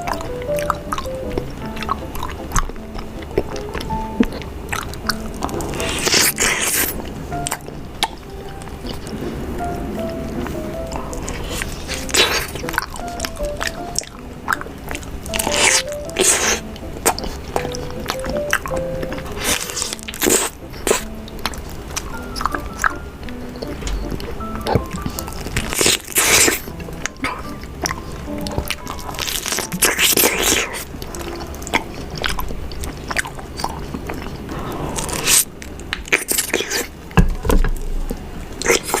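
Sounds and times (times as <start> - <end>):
loud wet crunches: 0.0 - 9.2, 10.9 - 23.0, 23.6 - 37.0
background music simple melody: 0.0 - 39.0
close biting and chewing: 0.0 - 39.0.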